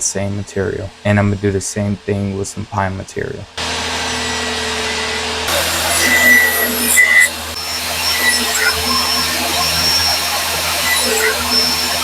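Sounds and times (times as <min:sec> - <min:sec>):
power saw whirring: 0:03.6 - 0:12.0.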